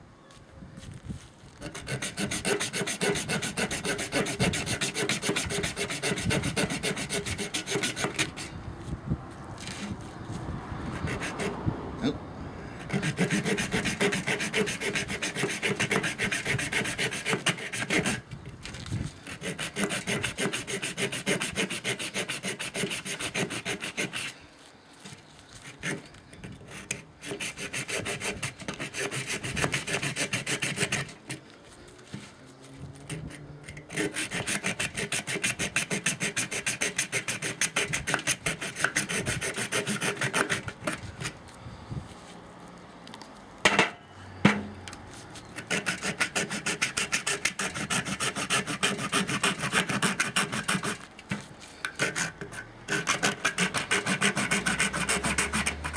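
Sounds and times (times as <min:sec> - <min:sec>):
saw rasping through coconut shell: 0:01.6 - 0:08.5, 0:10.9 - 0:11.6, 0:12.8 - 0:18.3, 0:19.2 - 0:24.4, 0:25.5 - 0:31.4, 0:33.0 - 0:41.4, 0:45.3 - 0:55.9.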